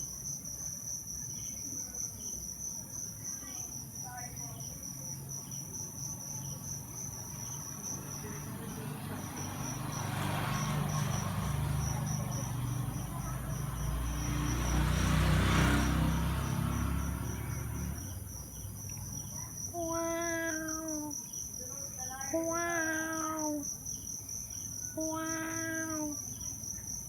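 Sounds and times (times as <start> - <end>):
crickets chirping: 0.0 - 27.0.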